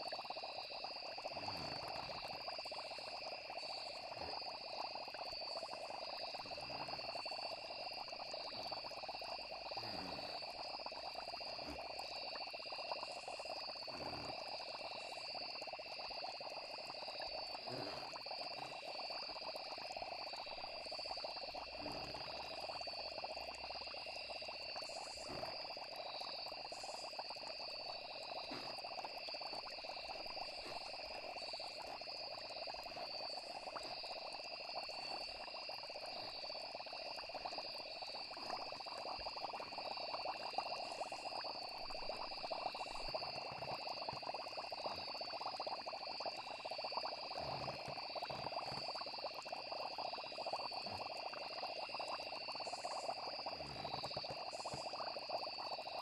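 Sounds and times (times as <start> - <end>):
crickets trilling: 0.0 - 56.0
frogs trilling: 0.0 - 56.0.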